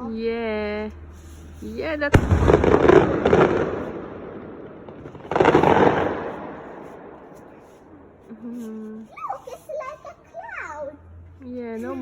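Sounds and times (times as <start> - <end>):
firework bang: 2.1 - 8.3
firework crackling burst: 2.2 - 8.3.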